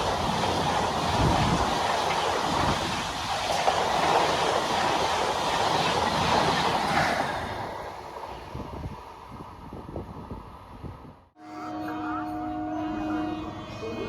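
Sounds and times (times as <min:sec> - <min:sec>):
train wheels on rails: 0:00.0 - 0:10.9.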